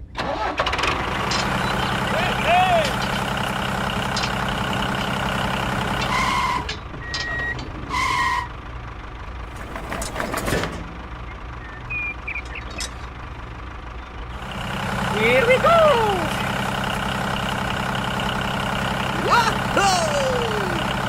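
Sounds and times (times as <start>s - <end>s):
construction vehicle engine: 0.0s - 21.0s
light clattering: 9.5s - 11.6s.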